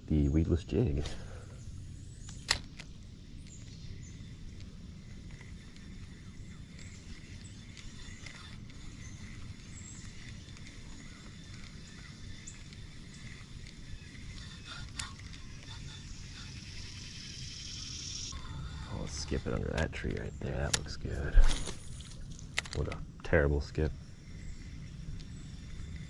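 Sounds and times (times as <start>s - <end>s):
birds chirping: 0.0s - 26.0s
sharp clicks: 2.2s - 3.8s, 19.4s - 23.0s.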